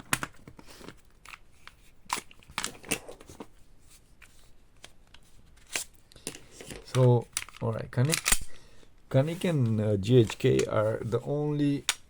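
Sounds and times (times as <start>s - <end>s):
pistol magazine clicks and knocks: 8.1s - 8.6s.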